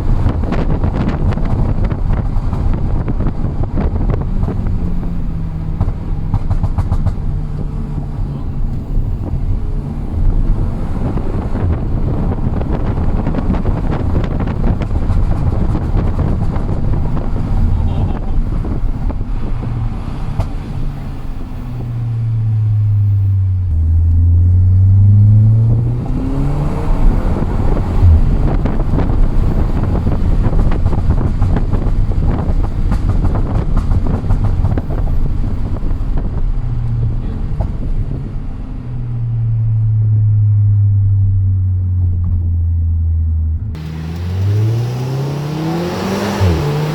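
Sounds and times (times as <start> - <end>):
exhaust pops and crackles: 0.0 - 21.1, 25.6 - 38.4, 41.7 - 43.0
car engine revving loud: 0.0 - 34.2, 43.8 - 46.9.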